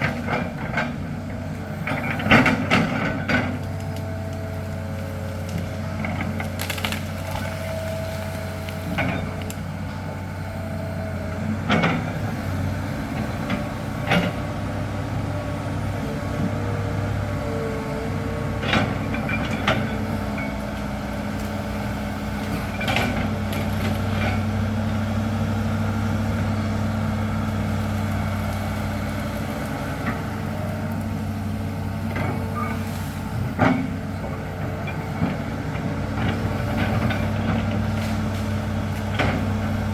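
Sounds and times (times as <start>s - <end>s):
excavator diesel engine running: 0.0s - 39.9s
sharp cracks and knocks: 5.4s - 9.6s.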